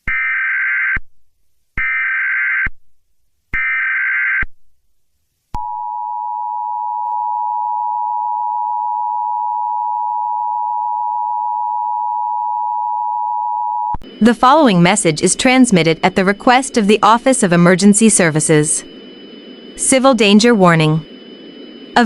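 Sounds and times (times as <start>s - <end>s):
electronic data bursts: 14.1s - 22.0s.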